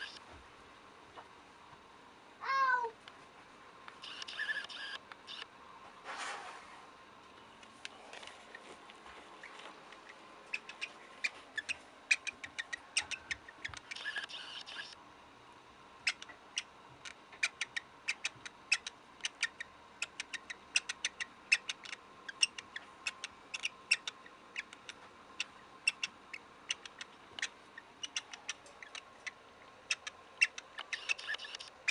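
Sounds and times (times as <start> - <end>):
cockatiel squeaking: 0.0 - 0.2, 4.0 - 5.5, 9.4 - 15.0, 17.4 - 24.8, 25.4 - 31.9.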